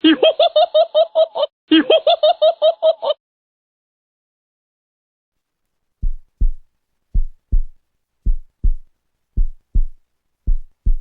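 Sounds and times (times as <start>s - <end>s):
heartbeat thumps: 6.0s - 11.0s.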